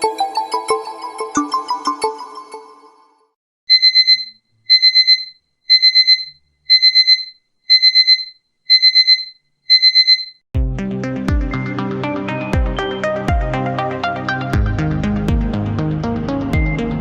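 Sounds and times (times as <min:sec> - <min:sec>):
musical ringtone: 0:00.5 - 0:10.4
high electronic alarm beeps: 0:03.7 - 0:10.4.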